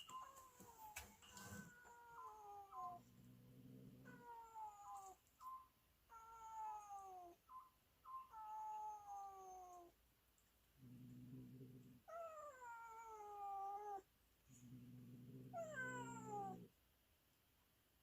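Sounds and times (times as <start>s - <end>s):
cat meowing: 0.1s - 3.1s, 15.5s - 16.7s.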